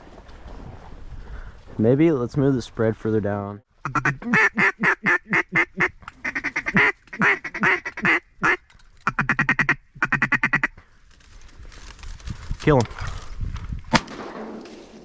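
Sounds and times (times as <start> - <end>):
duck call fast chatter: 3.8 - 10.7
duck call quacks: 3.8 - 10.7.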